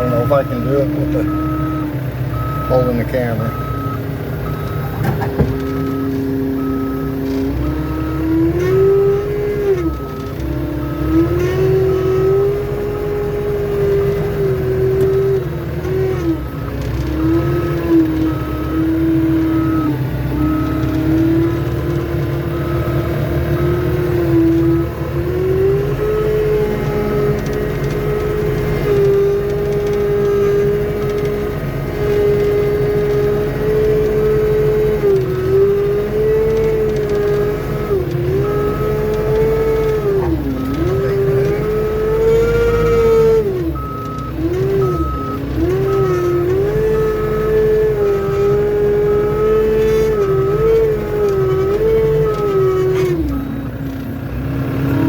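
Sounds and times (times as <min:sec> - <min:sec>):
reversing alarm beeping: 0:00.0 - 0:13.9, 0:33.7 - 0:53.7
skid steer engine under load: 0:00.0 - 0:55.0.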